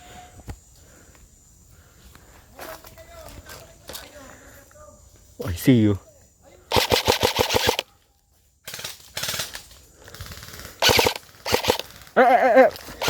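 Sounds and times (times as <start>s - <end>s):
airsoft gun firing bursts: 6.7s - 7.8s, 8.7s - 12.2s.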